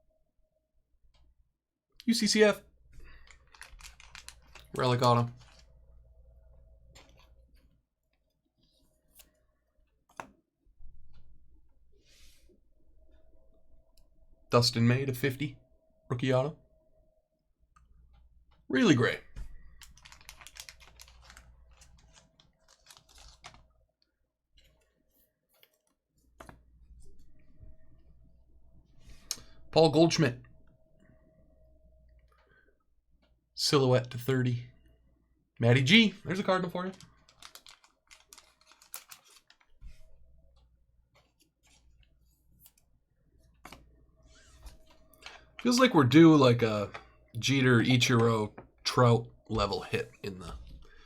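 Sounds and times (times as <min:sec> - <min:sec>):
trading cards clicking and rustling: 0:03.0 - 0:05.7, 0:19.7 - 0:23.7, 0:35.8 - 0:39.8
faint clicks and taps: 0:25.5 - 0:27.5, 0:36.9 - 0:45.7.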